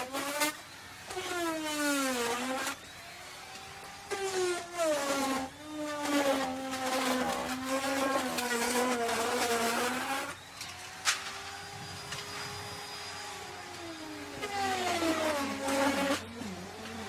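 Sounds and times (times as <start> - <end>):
router cutting wood: 0.0 - 17.0
wood router motor whine: 0.0 - 17.0.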